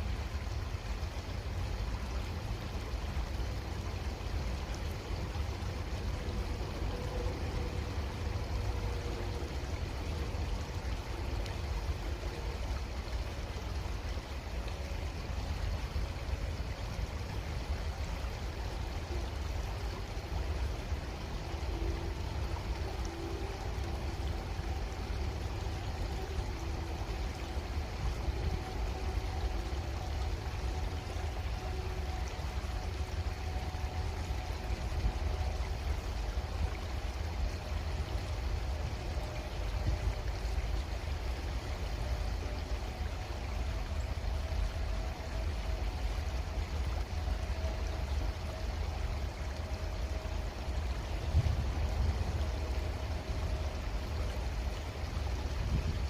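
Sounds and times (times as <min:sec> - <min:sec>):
creek water running: 0:00.0 - 0:56.0.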